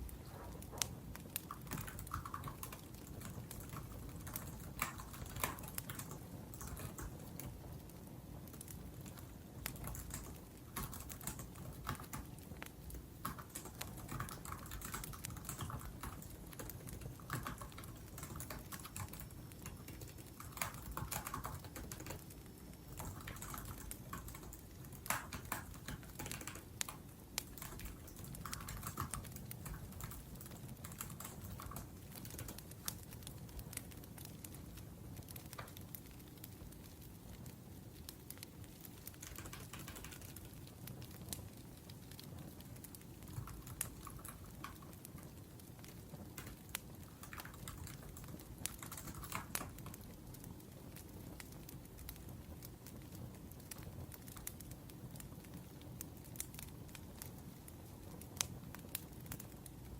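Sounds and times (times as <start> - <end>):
laptop keyboard typing: 0.0 - 7.6, 8.5 - 34.3, 38.9 - 41.2, 42.9 - 45.1, 45.8 - 51.0
wood fire crackling: 0.0 - 59.9.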